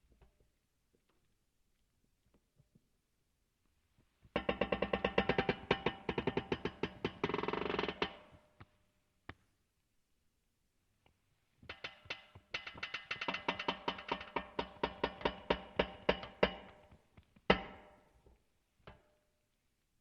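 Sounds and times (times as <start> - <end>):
metal creaking ticks: 11.7 - 18.0.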